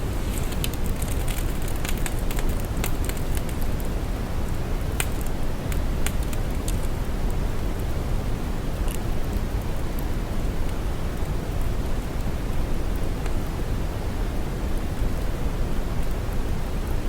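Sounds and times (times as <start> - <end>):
crackles and pops: 0.0 - 8.0, 8.7 - 13.5
deep bass-heavy hiss: 0.0 - 17.0.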